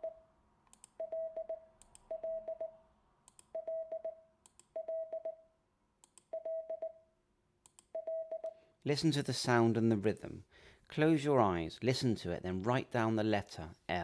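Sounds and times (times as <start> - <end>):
morse code beeps: 1.0 - 2.7, 4.8 - 5.4, 6.3 - 7.0, 8.0 - 8.6.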